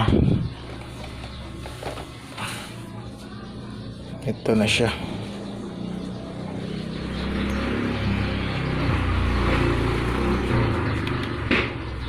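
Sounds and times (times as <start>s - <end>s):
passing vehicle engine rumble: 4.9s - 12.0s.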